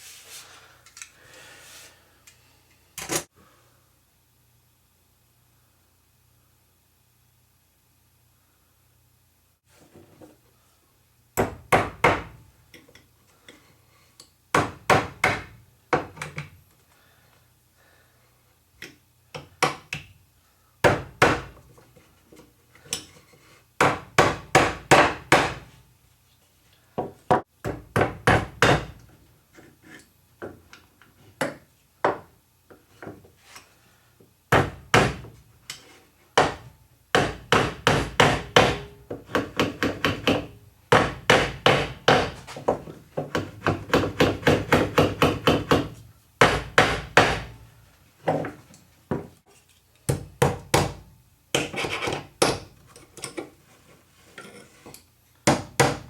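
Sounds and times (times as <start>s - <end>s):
hammer striking wood: 11.4s - 12.3s, 14.5s - 16.1s, 20.8s - 21.5s, 23.8s - 25.7s, 27.3s - 29.0s, 34.5s - 35.3s, 36.4s - 47.6s, 50.1s - 51.0s, 55.4s - 56.0s.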